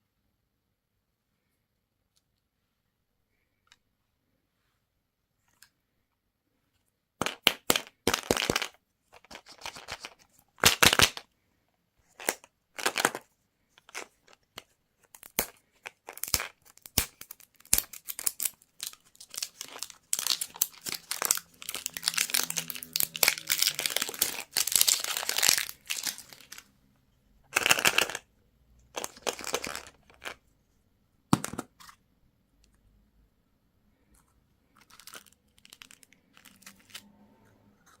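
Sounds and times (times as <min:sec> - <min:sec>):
plastic wrappers crinkling: 0:15.3 - 0:26.7, 0:34.8 - 0:37.0.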